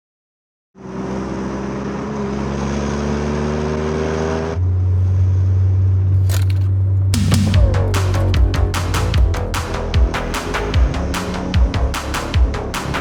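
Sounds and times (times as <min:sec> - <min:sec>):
car engine starting and revving: 0:00.8 - 0:05.4
sharp clicks: 0:06.2 - 0:10.8
deep bass drone music: 0:07.1 - 0:13.0.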